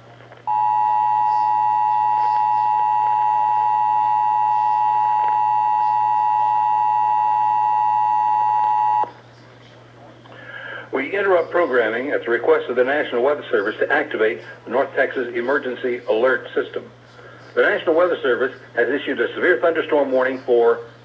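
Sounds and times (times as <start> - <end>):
two-tone alert signal: 0.5 - 9.1.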